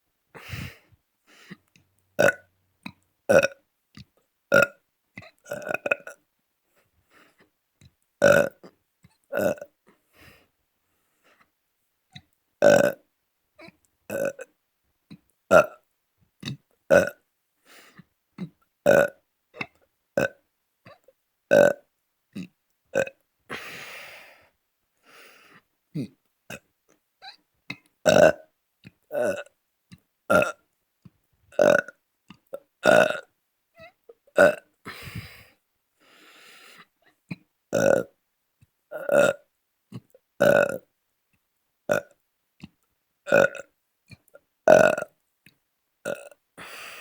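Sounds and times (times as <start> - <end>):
person burping: 0.4 - 0.8, 2.2 - 2.4, 3.3 - 3.6, 4.5 - 6.2, 8.2 - 8.7, 9.3 - 9.7, 12.6 - 13.0, 13.6 - 14.5, 15.5 - 15.8, 16.4 - 17.2, 18.4 - 23.7, 26.0 - 28.4, 29.1 - 29.5, 30.3 - 30.6, 31.6 - 32.0, 32.6 - 35.4, 37.7 - 38.2, 38.9 - 40.9, 41.9 - 42.1, 43.3 - 43.7, 44.7 - 45.1, 46.0 - 46.7.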